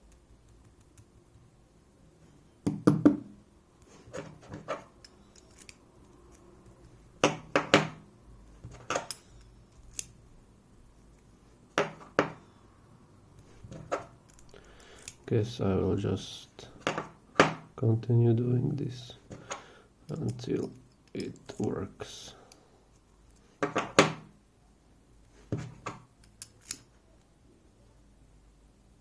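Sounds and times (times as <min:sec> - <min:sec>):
lock-picking tools clicking: 0:04.5 - 0:07.0, 0:08.7 - 0:10.2, 0:13.4 - 0:15.3, 0:20.0 - 0:21.7, 0:25.8 - 0:26.9.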